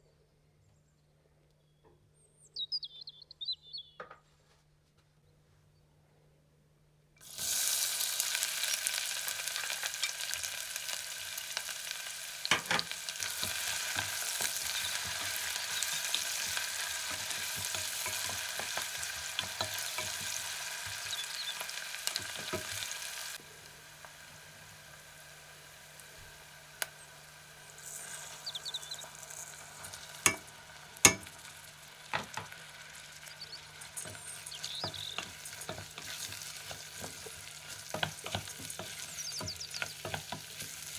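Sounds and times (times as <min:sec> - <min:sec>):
onion sizzling in oil: 0:07.2 - 0:40.9
utensil knocking against pot: 0:30.2 - 0:30.5, 0:31.1 - 0:31.3.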